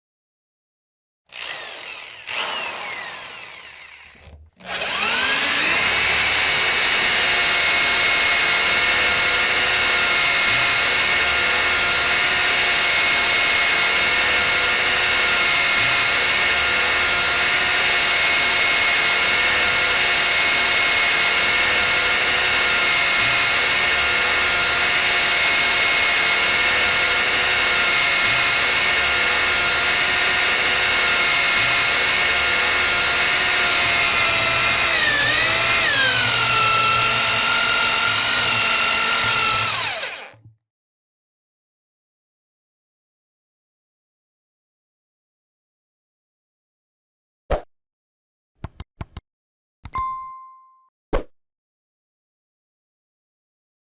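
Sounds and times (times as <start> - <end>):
electric drill whining: 1.3 - 40.4.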